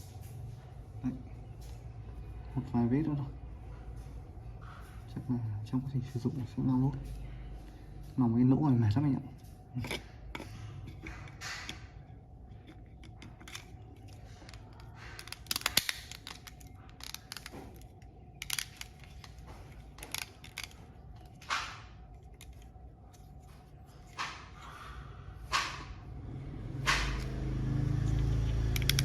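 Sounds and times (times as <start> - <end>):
plastic parts clicking and tapping: 9.8 - 23.3, 28.7 - 29.0.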